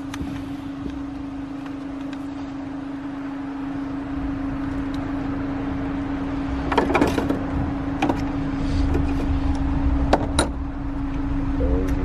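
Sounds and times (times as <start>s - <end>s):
steady hum: 7.6s - 12.0s.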